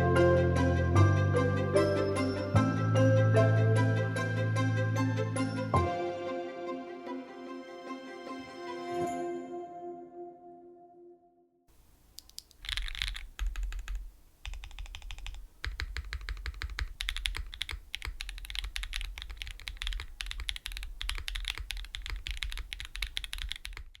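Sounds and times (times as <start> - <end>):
typing on mechanical keyboard: 12.2 - 24.0.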